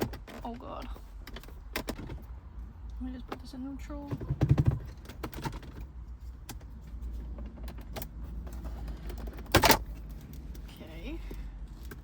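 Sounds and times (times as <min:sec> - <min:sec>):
gear lever clunks: 0:08.9 - 0:10.3.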